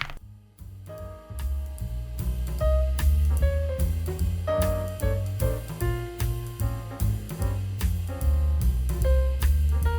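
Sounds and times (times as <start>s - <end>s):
jazz music: 1.2s - 9.9s
drum kit: 2.2s - 9.9s.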